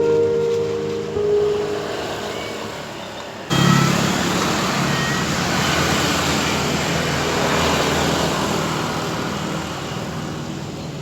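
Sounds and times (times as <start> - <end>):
background music: 0.0 - 5.4
road traffic passing: 0.0 - 11.0.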